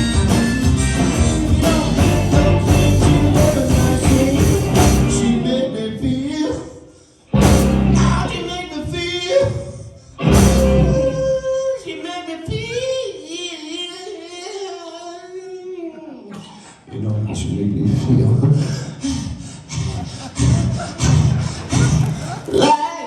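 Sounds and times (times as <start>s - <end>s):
loud ringing band chords: 0.0s - 5.5s, 7.4s - 8.3s, 10.3s - 11.2s
live blues band playing: 0.0s - 5.7s, 7.3s - 8.7s, 10.2s - 11.3s
person singing: 0.0s - 6.8s.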